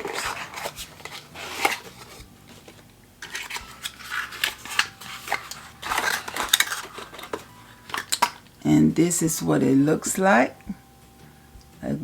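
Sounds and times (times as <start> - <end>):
scratchy rubbing of packaging: 0.0 - 8.2.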